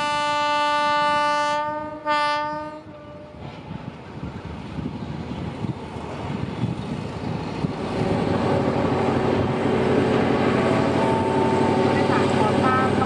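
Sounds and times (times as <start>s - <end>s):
locomotive engine running: 4.0s - 13.0s.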